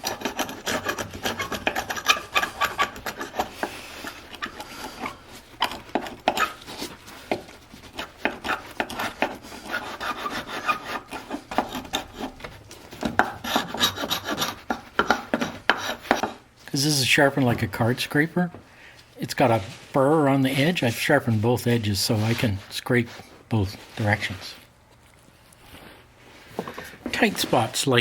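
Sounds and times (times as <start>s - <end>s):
hand scraper scraping wood: 0.0s - 16.5s, 26.6s - 28.0s.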